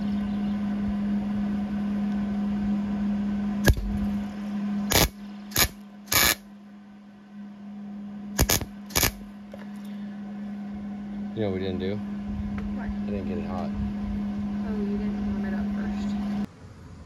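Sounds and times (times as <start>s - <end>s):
steady electrical hum: 0.0s - 17.0s
welder bursts: 4.9s - 6.4s, 8.4s - 9.3s.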